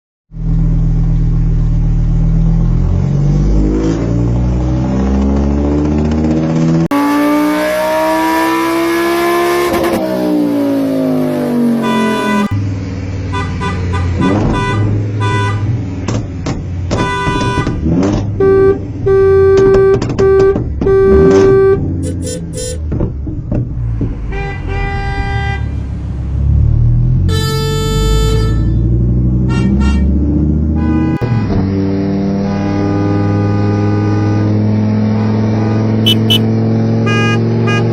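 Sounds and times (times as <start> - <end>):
car engine revving: 0.4 - 37.9
car horn honking: 11.6 - 12.6, 13.3 - 15.8, 16.9 - 22.9, 24.3 - 25.8, 27.3 - 31.7, 36.0 - 37.9.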